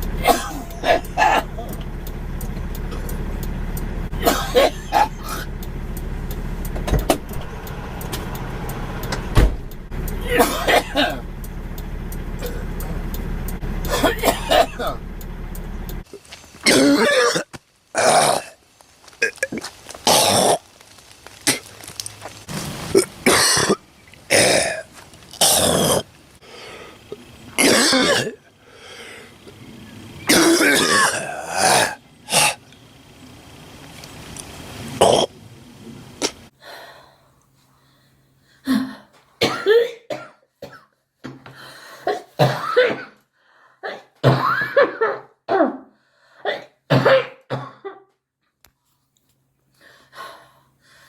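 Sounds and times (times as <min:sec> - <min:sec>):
steady low rumble: 0:00.0 - 0:16.4
person clearing throat: 0:00.2 - 0:01.7, 0:04.2 - 0:05.5, 0:10.2 - 0:11.2, 0:12.4 - 0:12.7, 0:13.9 - 0:15.0, 0:16.6 - 0:18.5, 0:27.6 - 0:28.4, 0:30.3 - 0:32.6
person coughing: 0:00.2 - 0:01.7, 0:04.2 - 0:05.5, 0:10.2 - 0:11.2, 0:13.9 - 0:15.0, 0:38.7 - 0:40.9, 0:42.0 - 0:43.2, 0:43.8 - 0:45.9, 0:46.5 - 0:48.0
dull thuds: 0:09.2 - 0:09.9.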